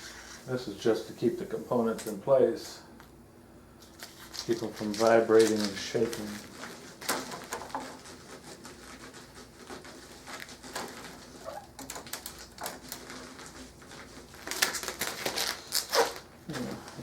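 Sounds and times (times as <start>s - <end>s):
packaging rustling and scraping: 3.8s - 17.0s.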